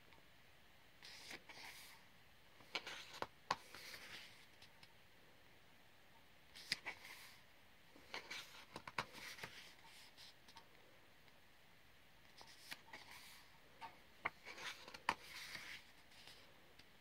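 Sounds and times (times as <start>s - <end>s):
paper rubbing and rustling: 14.2s - 16.5s.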